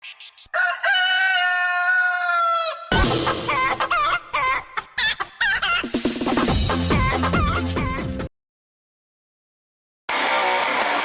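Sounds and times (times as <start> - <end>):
rooster crowing: 0.5 - 2.9
loud beat: 2.9 - 4.3, 5.8 - 8.3
chicken clucking: 3.7 - 6.0.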